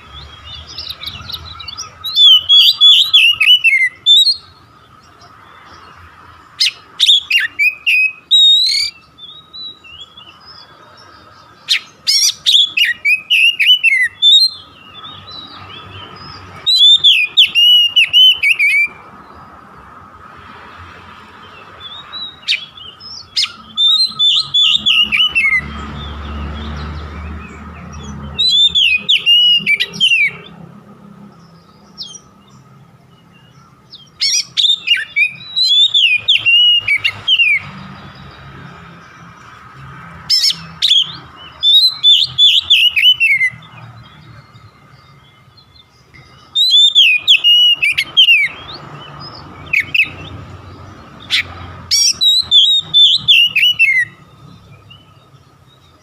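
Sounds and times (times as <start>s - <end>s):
bird singing whistled phrases: 0.0s - 4.5s, 6.6s - 10.4s, 11.7s - 15.6s, 16.6s - 19.0s, 21.8s - 25.7s, 28.3s - 30.5s, 33.4s - 37.7s, 40.4s - 43.7s, 46.2s - 48.8s, 51.3s - 54.2s.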